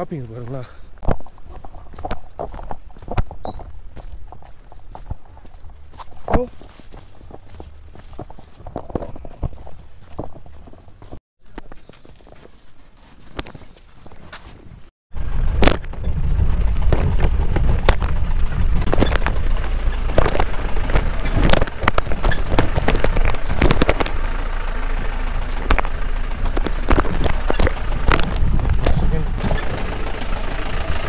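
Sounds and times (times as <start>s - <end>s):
jeep rumbling over rough track: 15.2s - 31.0s
sharp knocks and rattles: 15.6s - 30.6s.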